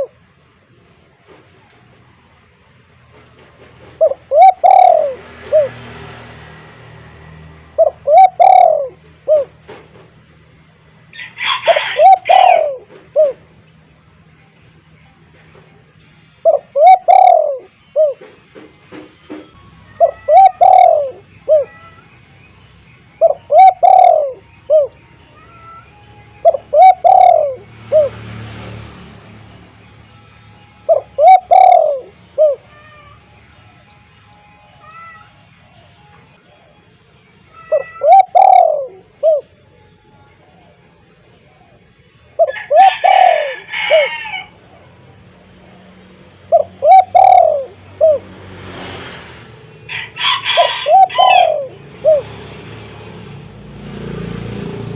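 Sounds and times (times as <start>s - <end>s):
dove cooing: 3.8s - 6.0s, 7.7s - 9.9s, 11.2s - 13.5s, 16.4s - 18.4s, 20.0s - 22.0s, 23.2s - 28.1s, 30.9s - 33.2s, 37.5s - 39.6s, 41.3s - 44.9s, 46.4s - 48.3s, 50.0s - 52.3s.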